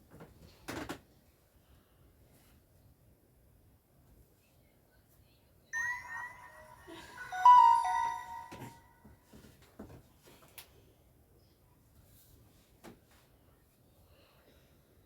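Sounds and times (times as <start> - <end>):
phone ringtone melody: 5.8 - 8.9.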